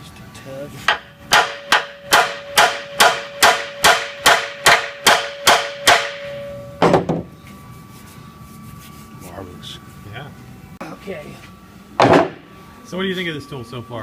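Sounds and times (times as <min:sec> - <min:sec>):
hammer tapping on steel: 0:00.9 - 0:06.3
metal ringing: 0:00.9 - 0:07.1.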